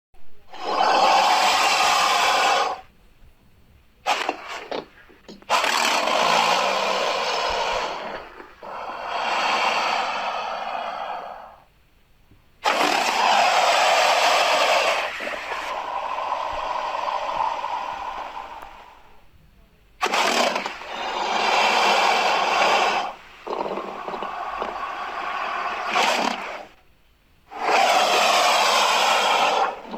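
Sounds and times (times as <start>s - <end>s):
harsh raspy hisses: 0.5s - 2.9s, 4.0s - 11.8s, 12.6s - 19.3s, 20.0s - 26.8s, 27.5s - 29.9s.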